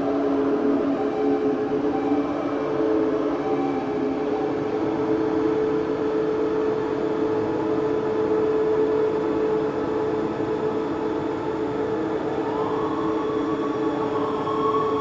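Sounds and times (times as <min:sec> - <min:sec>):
synthesizer drone: 0:00.0 - 0:07.6, 0:12.1 - 0:15.0.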